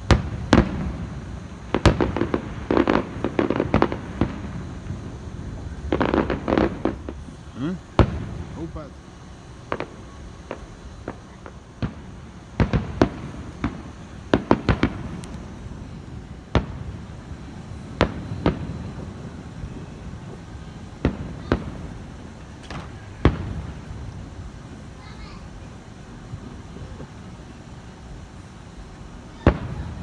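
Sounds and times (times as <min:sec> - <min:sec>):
fireworks bangs: 0:00.0 - 0:30.0
low background din: 0:00.0 - 0:30.0.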